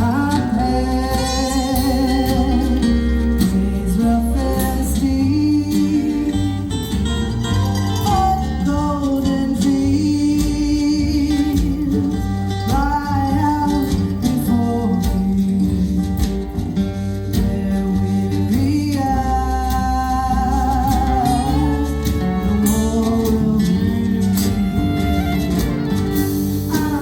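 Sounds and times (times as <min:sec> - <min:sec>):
person singing: 0:00.0 - 0:06.8, 0:07.9 - 0:16.5, 0:17.3 - 0:27.0
plucked acoustic guitar: 0:00.0 - 0:27.0.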